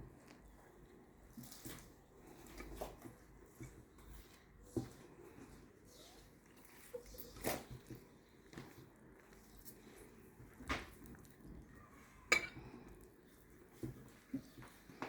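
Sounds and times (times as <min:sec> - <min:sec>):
dough squishing: 0:00.0 - 0:15.0.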